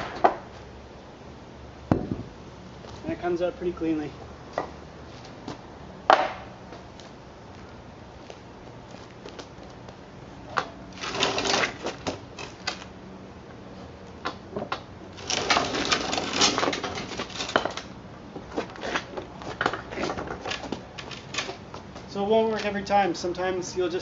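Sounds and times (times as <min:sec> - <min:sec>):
wooden boards knocking and clattering: 0:14.6 - 0:17.8.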